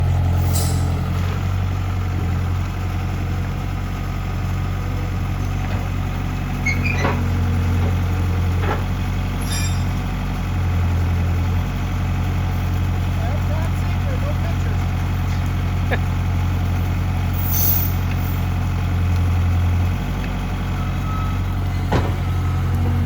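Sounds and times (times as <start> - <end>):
diesel engine idling: 0.0 - 23.0.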